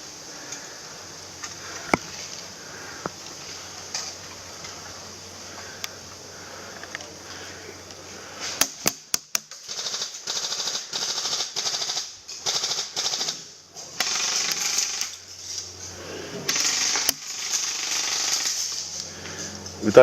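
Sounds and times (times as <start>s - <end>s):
airsoft gun full-auto bursts: 8.6s - 15.2s, 16.5s - 18.8s.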